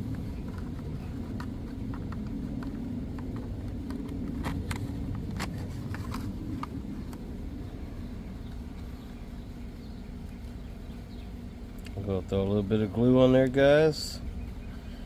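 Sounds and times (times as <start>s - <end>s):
small parts clicking and tapping: 0.0s - 7.3s
steady low rumble: 0.0s - 15.0s.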